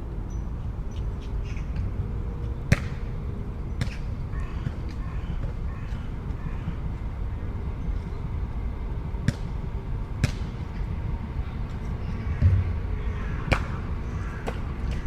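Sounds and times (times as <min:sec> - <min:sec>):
traffic rumble: 0:00.0 - 0:15.0
low thump: 0:12.4 - 0:13.1.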